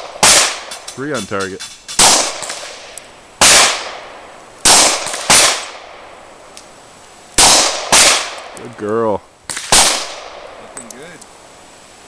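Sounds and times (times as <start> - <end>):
pistol shots with echo: 0.0 - 1.0, 1.6 - 6.0, 7.4 - 8.6, 9.5 - 10.6.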